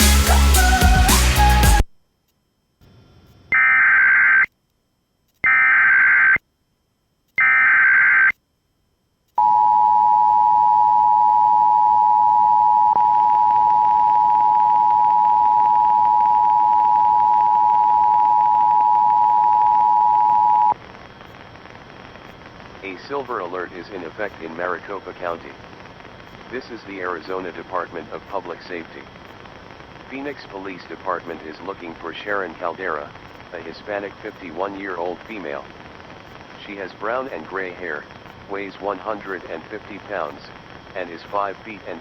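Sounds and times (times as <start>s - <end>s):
harsh digital buzzing screech: 5.4s - 6.4s.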